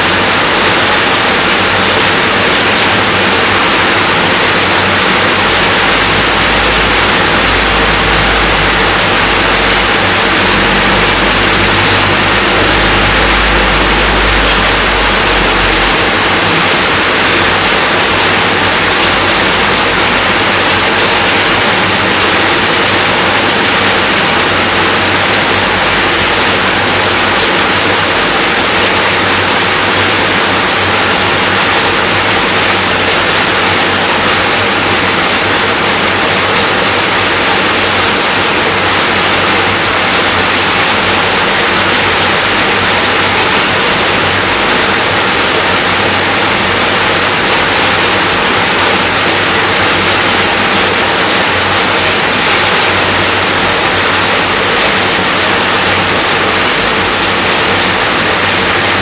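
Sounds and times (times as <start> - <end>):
steady rainfall: 0.0 - 59.0
low rumble: 5.5 - 18.1.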